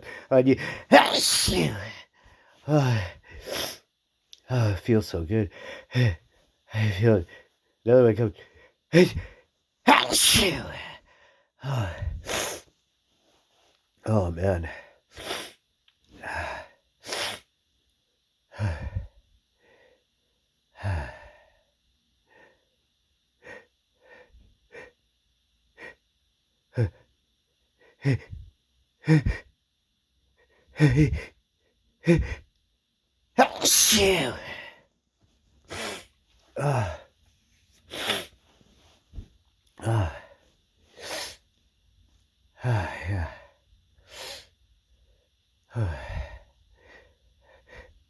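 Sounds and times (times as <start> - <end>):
breaths: 0.0 - 1.0, 1.6 - 3.9, 5.5 - 7.8, 8.4 - 9.5, 10.4 - 12.7, 18.5 - 20.1, 20.8 - 21.7, 33.4 - 34.9, 37.8 - 41.4, 42.6 - 48.0
man sneezing: 0.0 - 2.0, 9.9 - 11.0, 29.1 - 29.5, 30.8 - 31.3, 33.4 - 34.7, 37.9 - 38.3.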